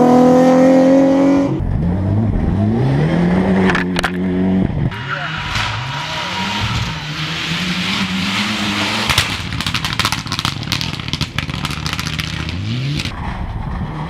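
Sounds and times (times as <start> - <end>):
rally car engine revving: 0.0 - 14.0
sharp cracks and clatter: 7.4 - 13.2.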